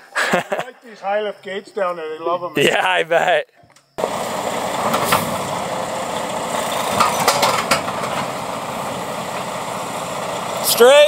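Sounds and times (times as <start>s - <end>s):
truck diesel engine running: 4.0s - 11.0s.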